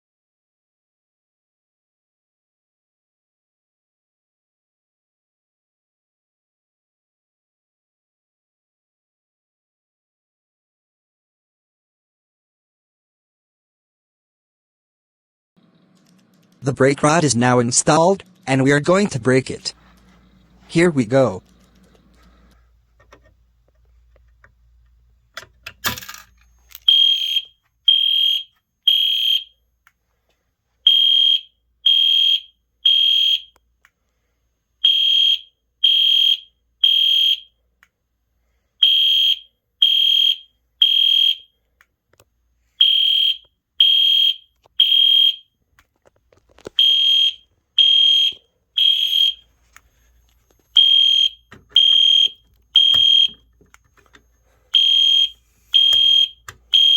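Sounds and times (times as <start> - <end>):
fire alarm horn blasts: 26.8 - 29.6, 30.8 - 33.6, 34.8 - 37.6, 38.8 - 41.6, 42.8 - 45.5, 46.8 - 49.5, 50.7 - 53.5, 54.7 - 56.9.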